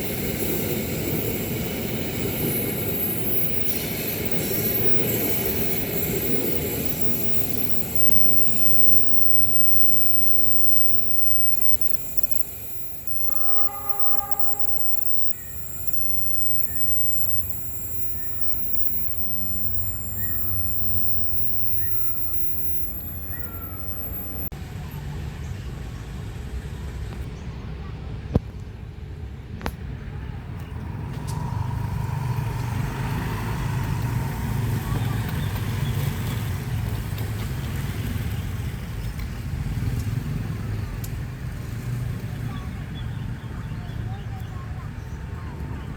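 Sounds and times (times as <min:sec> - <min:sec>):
diesel locomotive rumbling: 0:00.0 - 0:28.3, 0:29.0 - 0:45.9
locomotive horn blast: 0:13.3 - 0:15.3.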